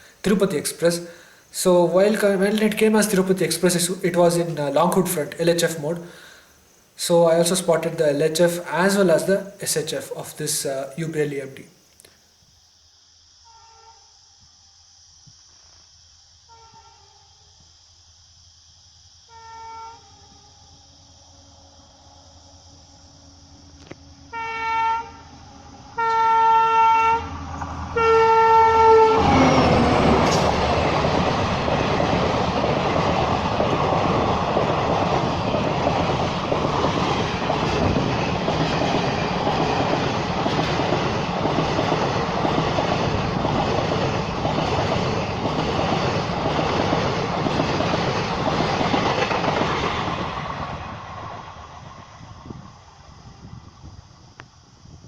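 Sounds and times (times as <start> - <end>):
train passing at speed: 0.0 - 11.6, 20.0 - 55.0
locomotive horn blasts: 24.3 - 25.2, 26.0 - 27.3, 27.9 - 30.4.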